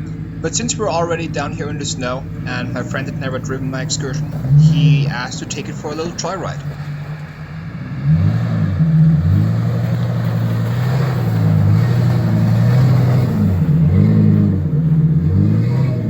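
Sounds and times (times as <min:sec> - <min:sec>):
truck engine revving: 0:00.0 - 0:16.0.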